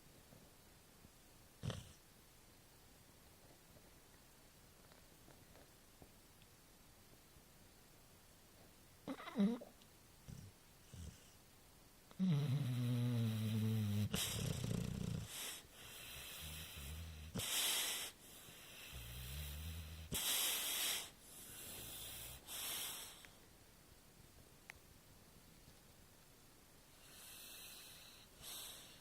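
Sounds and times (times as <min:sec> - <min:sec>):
dog snoring: 0:01.6 - 0:02.0, 0:10.3 - 0:11.4, 0:12.2 - 0:23.2, 0:27.0 - 0:29.0
dog's hissing breaths: 0:14.0 - 0:19.1, 0:20.1 - 0:23.4.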